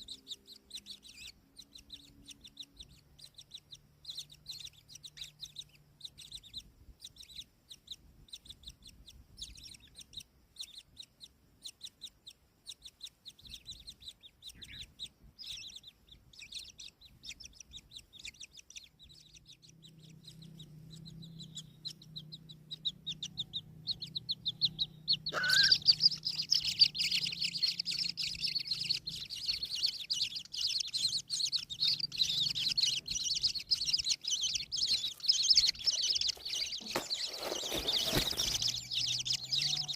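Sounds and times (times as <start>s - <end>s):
bird chicks chirping: 0.0s - 39.9s
chorus of begging calls: 19.2s - 39.9s.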